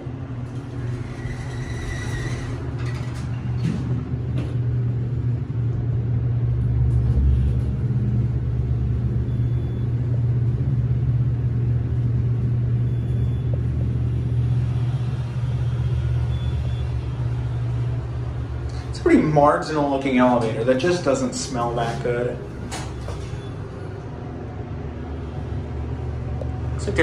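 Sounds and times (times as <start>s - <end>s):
elevator hum and rumble: 0.0s - 27.0s.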